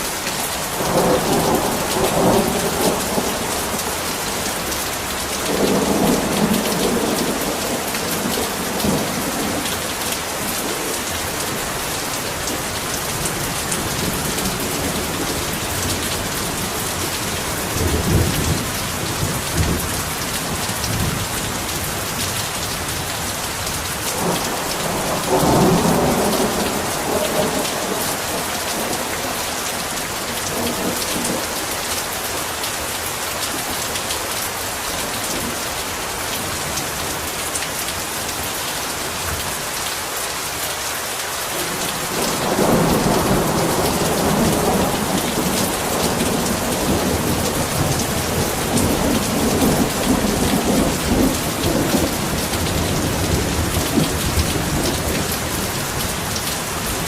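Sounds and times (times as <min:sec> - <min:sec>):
heavy rain: 0:00.0 - 0:57.0
thunder rumbling: 0:41.6 - 0:56.1.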